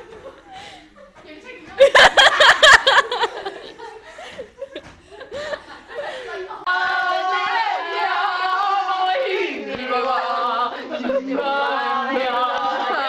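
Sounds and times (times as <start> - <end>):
group of voices singing: 6.4 - 13.0.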